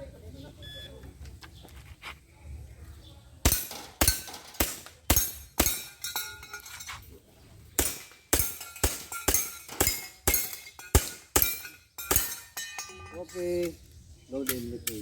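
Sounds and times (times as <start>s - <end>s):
airsoft pistol shots: 3.5s - 5.8s, 7.8s - 12.4s.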